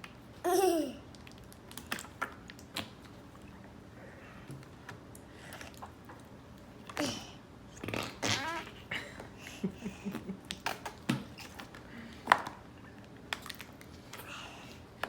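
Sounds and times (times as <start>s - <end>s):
putty squelching fart noises: 7.8s - 8.8s.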